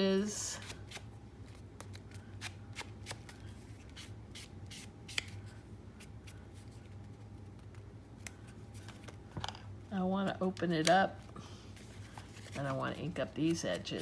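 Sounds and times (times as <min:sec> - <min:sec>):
paper rustling: 0:11.8 - 0:14.0.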